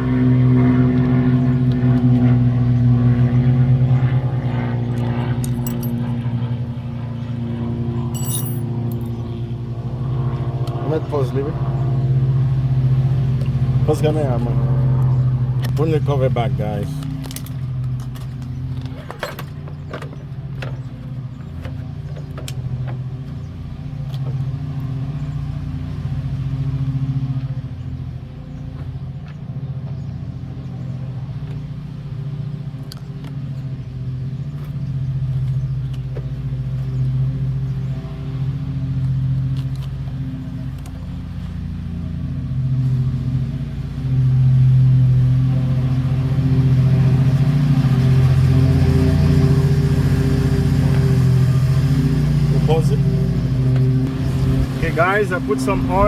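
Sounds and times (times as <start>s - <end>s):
low engine-like drone: 0.0s - 56.0s
light metallic clicks and clinks: 5.0s - 6.2s, 8.1s - 9.2s.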